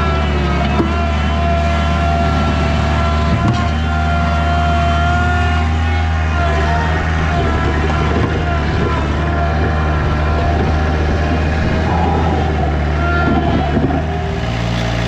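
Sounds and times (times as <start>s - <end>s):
skid steer engine running: 0.0s - 15.0s.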